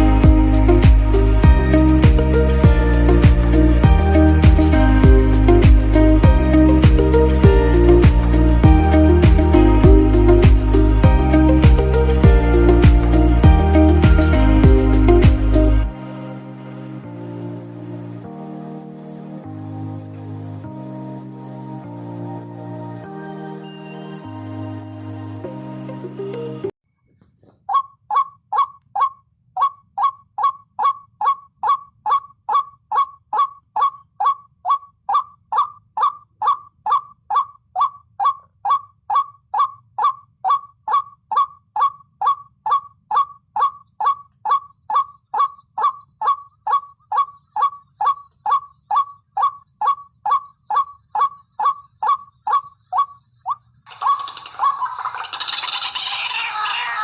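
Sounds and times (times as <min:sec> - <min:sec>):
rough noisy sound: 0:53.9 - 0:57.0.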